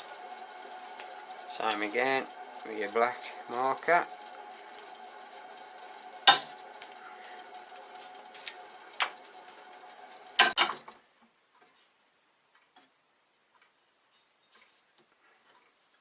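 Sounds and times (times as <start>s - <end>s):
steady low hum: 0.0s - 10.4s.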